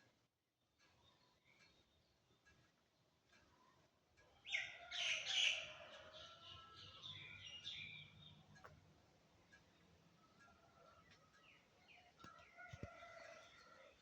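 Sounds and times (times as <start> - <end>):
bird singing: 4.3 - 8.7.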